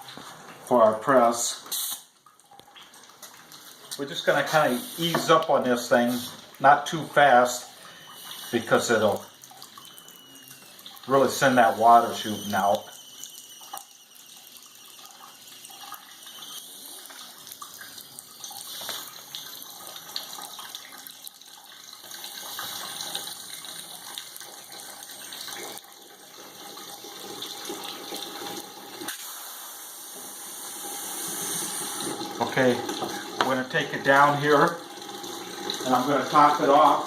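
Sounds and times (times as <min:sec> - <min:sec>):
water splashing and trickling: 0:00.1 - 0:29.1, 0:31.8 - 0:37.0.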